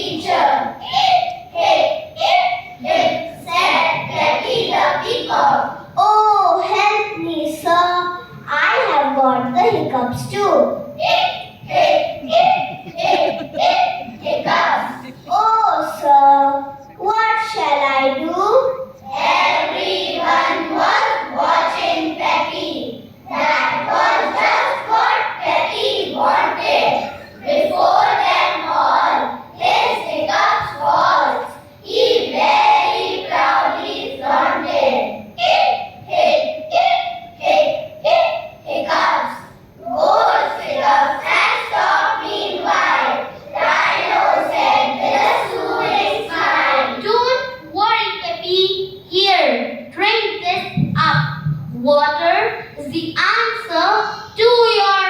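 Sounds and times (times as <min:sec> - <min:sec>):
children reciting in unison: 0:00.0 - 0:48.9.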